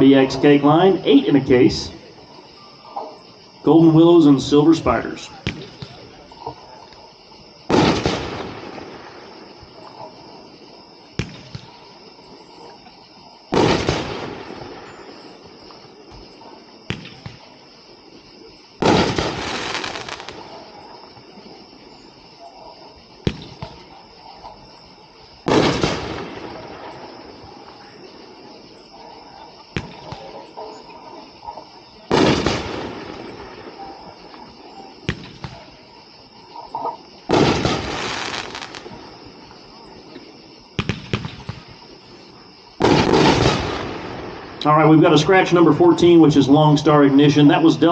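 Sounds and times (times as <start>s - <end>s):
firework loud break: 7.7s - 9.1s, 13.5s - 15.3s, 18.8s - 20.4s, 25.5s - 26.7s, 32.1s - 33.5s, 37.3s - 39.0s, 42.8s - 44.8s
firework launch thump: 40.8s - 41.8s.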